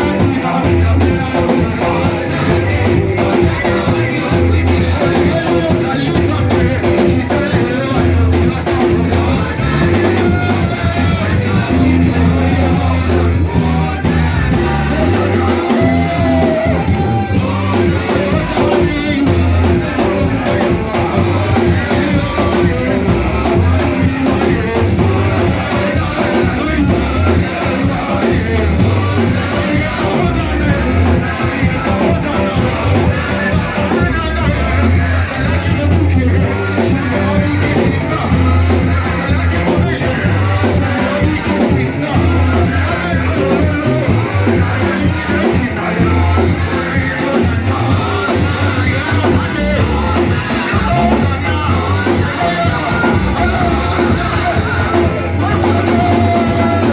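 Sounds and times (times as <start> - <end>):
bass guitar: 0.0 - 56.9
drum kit: 0.0 - 56.9
electric guitar: 0.0 - 56.9
people singing: 0.0 - 56.9.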